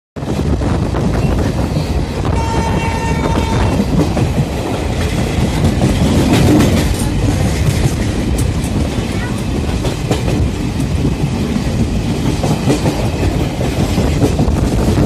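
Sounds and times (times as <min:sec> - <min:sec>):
train wheels rumbling on track: 0:00.2 - 0:15.0
train horn blast: 0:02.2 - 0:04.0.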